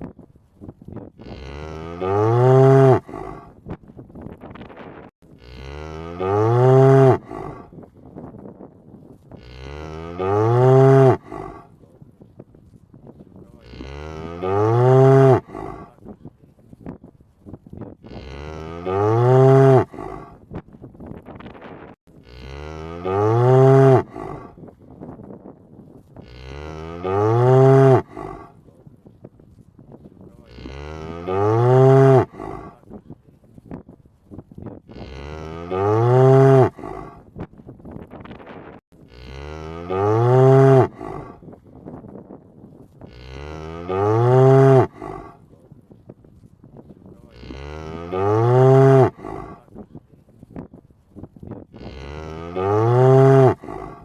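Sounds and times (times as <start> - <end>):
cow mooing: 1.2 - 3.5, 5.4 - 7.7, 9.4 - 11.7, 13.6 - 16.0, 18.0 - 20.4, 22.2 - 24.6, 26.2 - 28.6, 30.4 - 32.8, 34.9 - 37.2, 39.0 - 41.4, 43.1 - 45.4, 47.2 - 49.7, 51.7 - 54.0.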